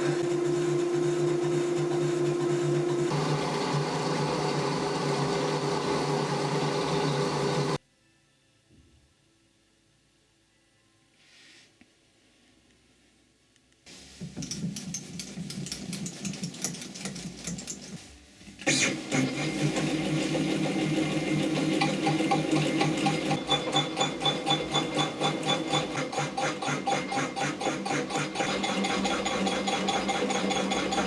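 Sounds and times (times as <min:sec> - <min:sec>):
metalworking machine clattering: 0:21.6 - 0:31.0.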